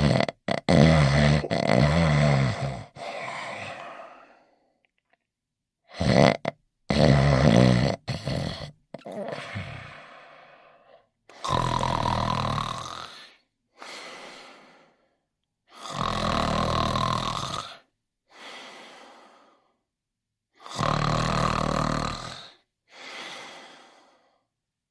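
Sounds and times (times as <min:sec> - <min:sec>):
cartoon dog snoring: 0:00.0 - 0:04.4, 0:05.9 - 0:10.4, 0:11.3 - 0:13.4, 0:15.7 - 0:17.9, 0:20.6 - 0:22.6
quiet breath out: 0:02.5 - 0:04.8, 0:09.2 - 0:11.5, 0:13.1 - 0:15.2, 0:17.8 - 0:19.8, 0:22.3 - 0:24.5.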